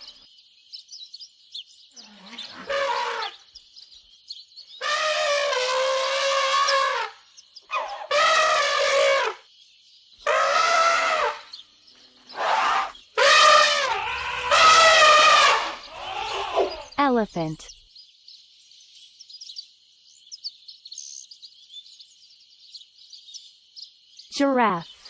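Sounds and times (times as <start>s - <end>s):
elephant trumpeting: 2.0s - 3.4s, 4.8s - 9.4s, 10.2s - 17.0s.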